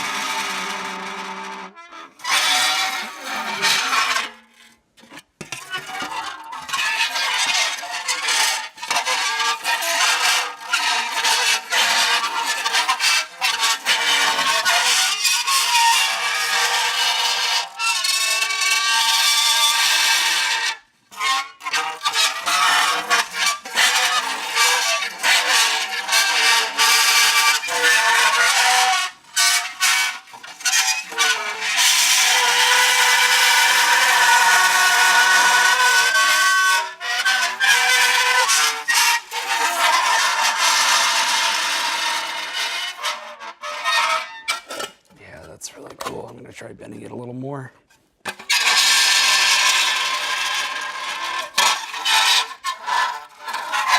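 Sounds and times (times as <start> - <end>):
metal squealing on dry ice: 0.0 - 45.6, 48.2 - 53.9.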